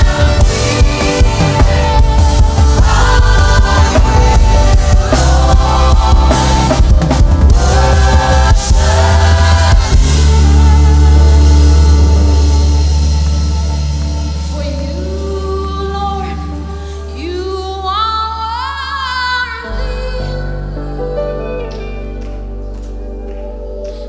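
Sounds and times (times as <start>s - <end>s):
band with drums and bass: 0.0s - 15.5s
choir singing gospel: 0.0s - 17.9s.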